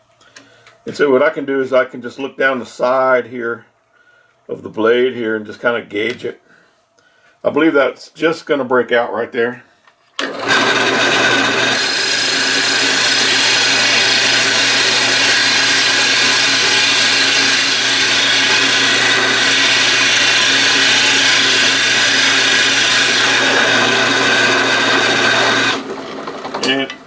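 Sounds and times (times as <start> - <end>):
power drill hole saw cutting wood: 10.2 - 27.0.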